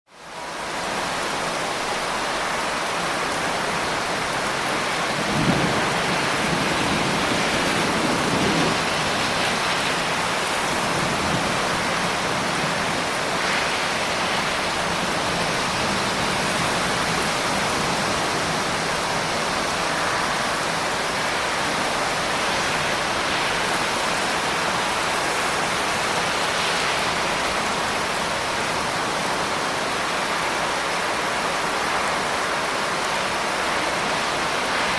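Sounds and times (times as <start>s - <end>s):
heavy rain falling: 0.3s - 34.9s
distant thunder rumbling: 5.0s - 9.8s.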